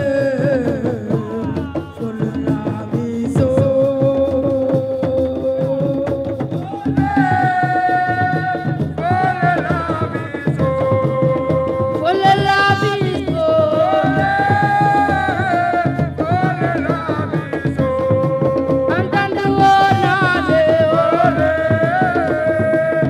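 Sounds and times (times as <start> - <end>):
fast drum beat: 0.0 - 23.0.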